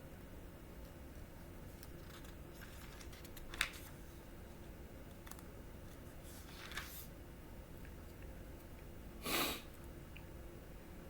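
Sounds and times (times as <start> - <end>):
book pages turning: 1.7 - 4.1, 5.2 - 7.1.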